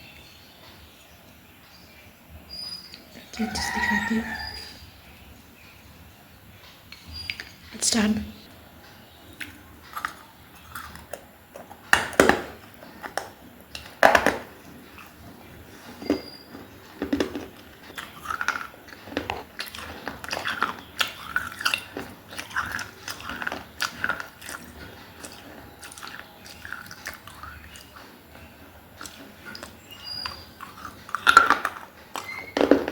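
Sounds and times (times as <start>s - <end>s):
crunchy bites of baked clay: 9.3s - 15.2s, 15.8s - 32.9s.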